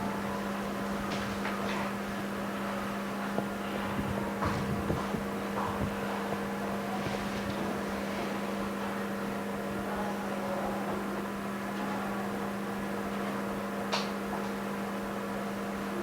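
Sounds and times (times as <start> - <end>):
steady electrical hum: 0.0 - 16.0.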